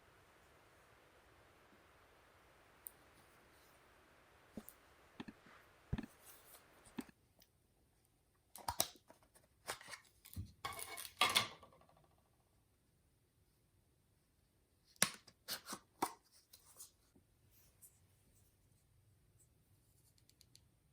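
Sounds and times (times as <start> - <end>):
clicks and taps of small parts: 20.1 - 20.7.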